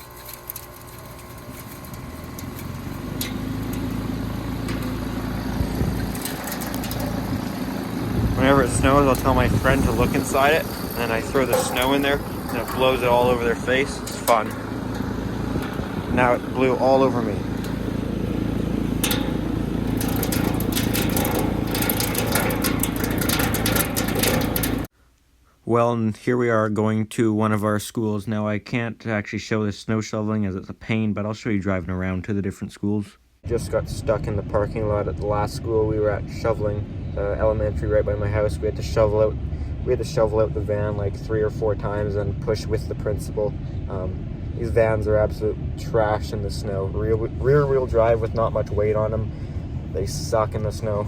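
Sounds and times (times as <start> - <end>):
heat pump fan humming: 0.0 - 24.9
wind crackling on microphone: 5.0 - 24.9.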